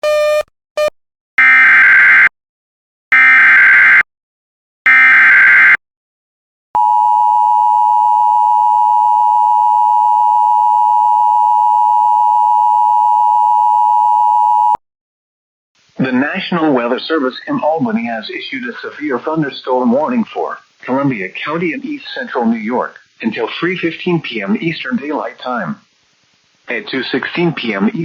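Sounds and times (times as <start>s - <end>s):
long steady attention tone: 6.8s - 14.8s.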